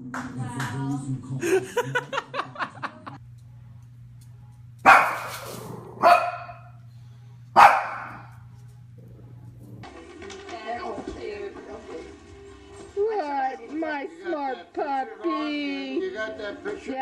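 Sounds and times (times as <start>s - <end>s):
dog barking: 4.8s - 6.8s, 7.6s - 8.4s.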